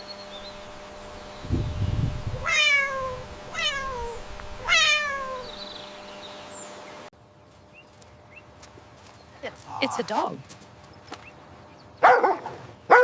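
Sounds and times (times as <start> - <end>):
cat meowing: 2.4 - 5.6.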